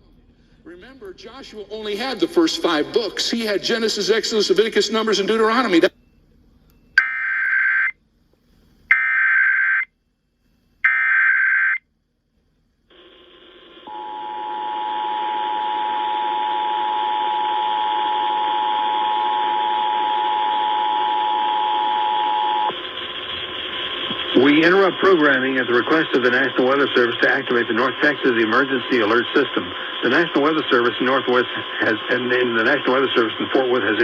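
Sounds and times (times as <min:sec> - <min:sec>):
radio hiss: 0:12.9 - 0:34.0
two-tone attention signal: 0:13.9 - 0:22.7.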